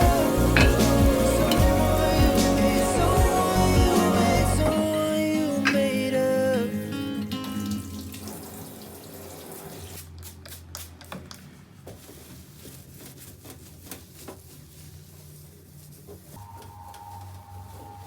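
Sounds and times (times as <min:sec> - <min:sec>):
pop song: 0:00.0 - 0:08.1.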